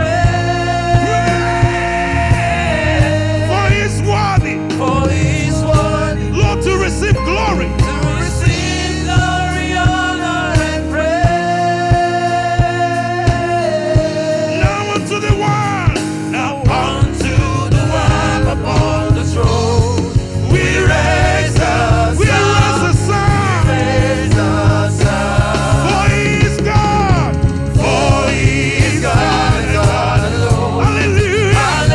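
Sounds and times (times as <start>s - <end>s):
band with steady drum beat: 0.0s - 31.9s
voices singing: 0.0s - 31.9s.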